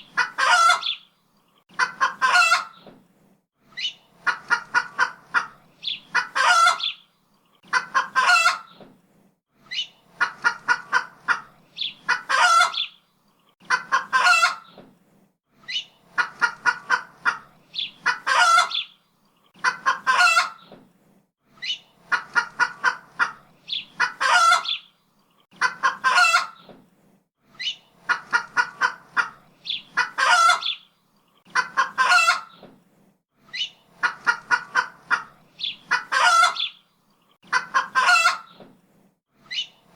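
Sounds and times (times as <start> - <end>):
chicken clucking and squawking: 0.0 - 1.0, 1.7 - 2.9, 3.8 - 7.0, 7.6 - 8.8, 9.7 - 13.0, 13.6 - 14.8, 15.7 - 20.7, 21.6 - 24.9, 25.5 - 26.7, 27.6 - 32.6, 33.5 - 36.8, 37.4 - 38.6.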